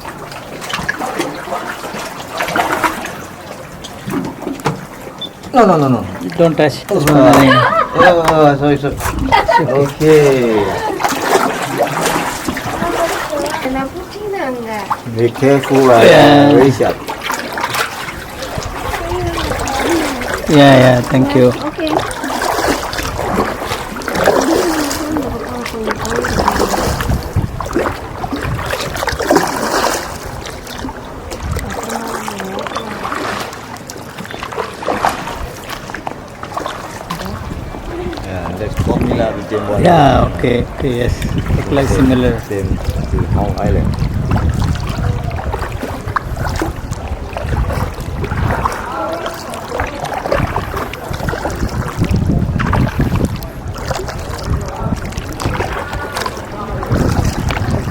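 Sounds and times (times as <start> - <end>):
paddle splashes: 0.0 - 57.9
water splashing around canoe: 0.0 - 57.9
wind rumble on microphone: 8.6 - 10.0, 18.1 - 32.1, 37.1 - 57.9.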